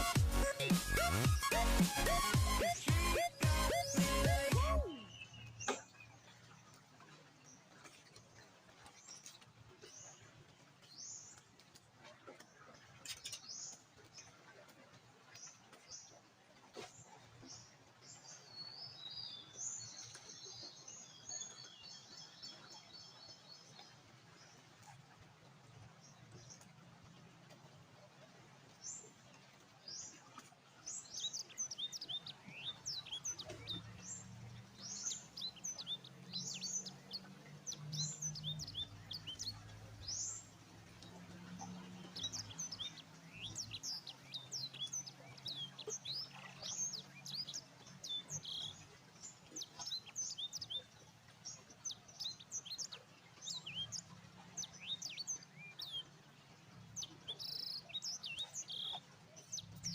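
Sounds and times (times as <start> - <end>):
small birds chirping: 0.0 - 11.7, 28.0 - 59.9.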